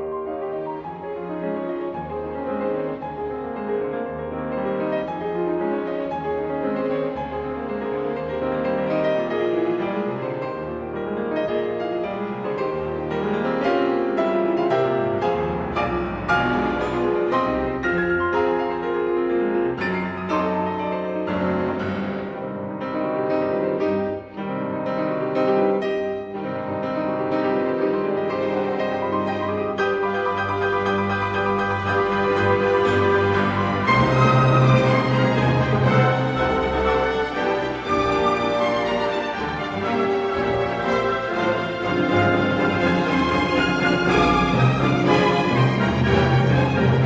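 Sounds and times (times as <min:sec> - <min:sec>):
slow piano music: 0:00.0 - 0:47.0.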